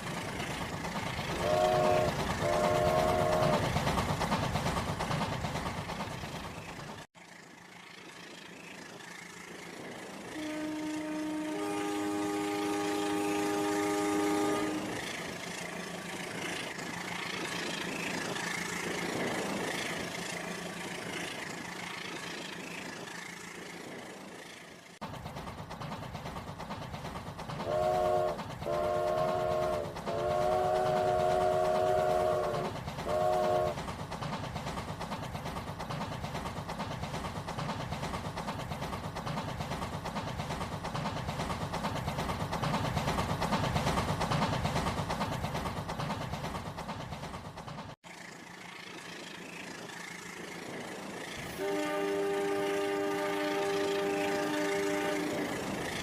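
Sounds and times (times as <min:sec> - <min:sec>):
train rumble: 0:00.0 - 0:56.0
train horn: 0:01.3 - 0:03.7, 0:10.3 - 0:15.0, 0:27.6 - 0:33.8, 0:51.4 - 0:55.7.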